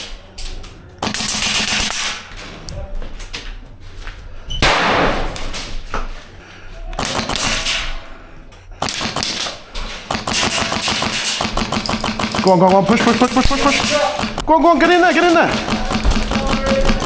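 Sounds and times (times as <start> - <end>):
airsoft guns full-auto bursts: 1.0 - 2.2, 7.0 - 7.9, 8.8 - 17.0.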